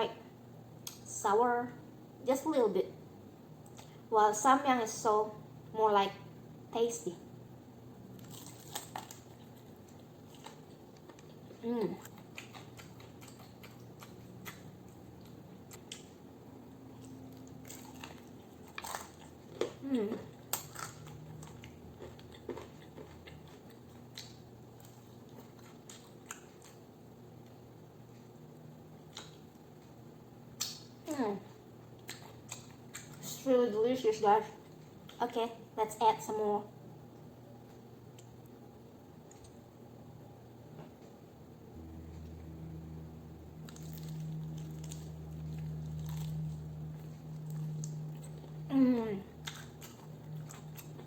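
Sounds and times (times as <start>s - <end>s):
low steady hum: 0.0s - 51.0s
person chewing: 8.2s - 16.2s, 16.9s - 27.5s, 29.1s - 29.6s, 32.0s - 33.3s, 43.6s - 51.0s
low hum: 36.6s - 51.0s
wet squishing of food: 43.5s - 48.7s.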